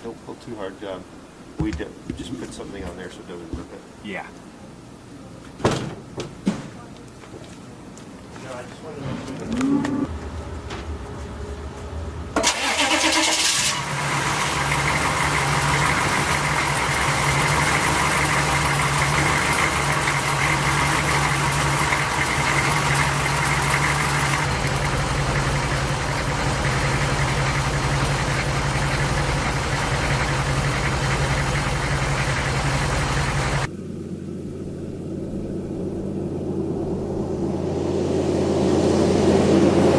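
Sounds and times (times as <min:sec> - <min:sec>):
car engine idling: 0:09.4 - 0:37.8
engine starter cranking: 0:12.4 - 0:16.6.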